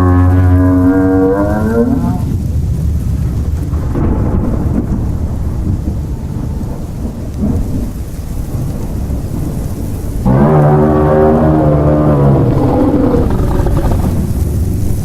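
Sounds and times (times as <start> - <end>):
faint rain-like hiss: 0.0 - 15.0
low thunder-like rumble: 0.0 - 15.0
deep droning tone: 10.2 - 15.0.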